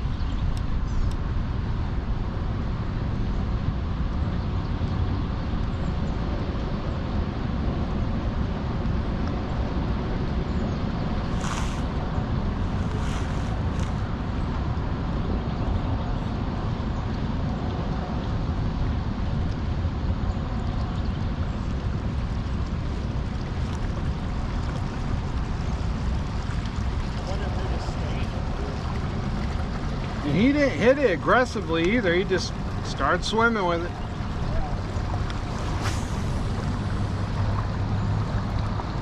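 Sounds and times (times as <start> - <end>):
wind rumble: 0.0 - 39.0
short hissy sounds: 11.3 - 12.0, 12.6 - 14.0, 35.3 - 37.2
distant noise: 26.2 - 39.0.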